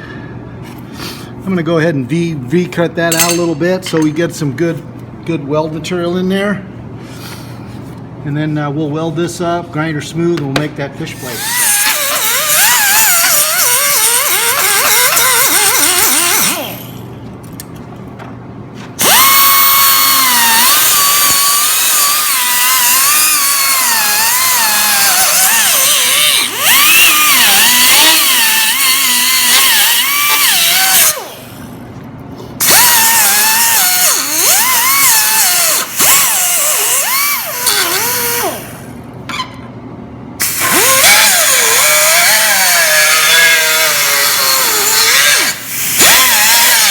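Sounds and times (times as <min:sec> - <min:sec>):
angle grinder cutting steel: 0:03.1 - 0:04.1, 0:11.2 - 0:17.0, 0:19.0 - 0:31.5, 0:32.6 - 0:38.7, 0:40.4 - 0:46.9.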